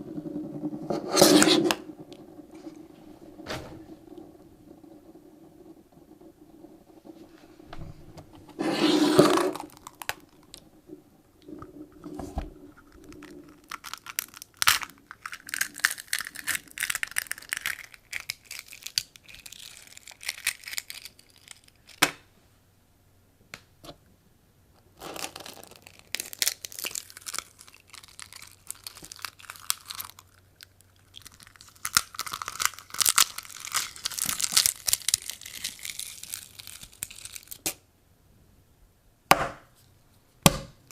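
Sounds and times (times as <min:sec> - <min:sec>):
eggshells cracking and crunching: 0:09.4 - 0:10.8, 0:11.4 - 0:22.2, 0:24.8 - 0:37.8.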